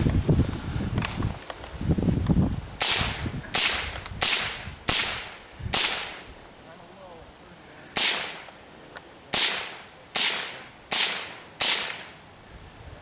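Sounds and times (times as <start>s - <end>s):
rifle shots: 2.8s - 6.3s, 8.0s - 8.5s, 9.3s - 12.2s.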